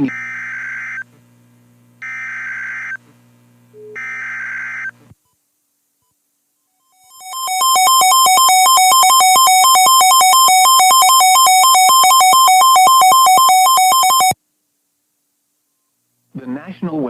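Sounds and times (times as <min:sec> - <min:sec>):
warbling electronic alert tone: 0:06.9 - 0:14.4.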